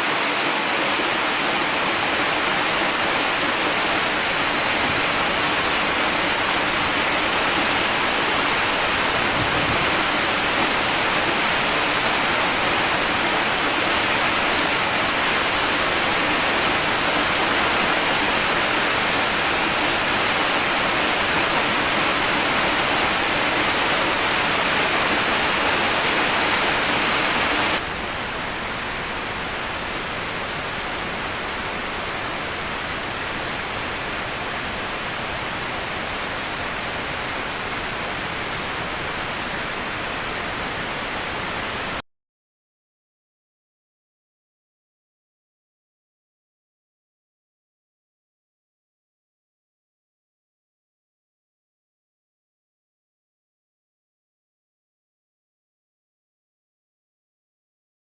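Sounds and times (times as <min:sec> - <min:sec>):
waterfall rushing: 0:00.0 - 0:42.0.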